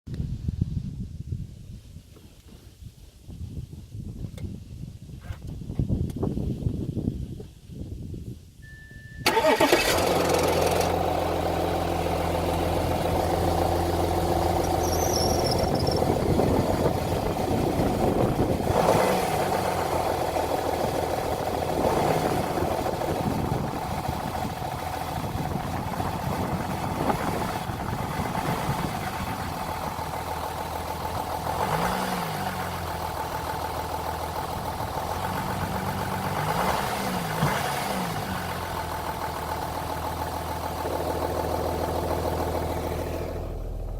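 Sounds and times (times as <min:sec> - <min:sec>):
short high beep: 0:08.6 - 0:09.3
engine start-up rattle: 0:09.2 - 0:11.2
diesel engine starting and idling: 0:09.2 - 0:43.9.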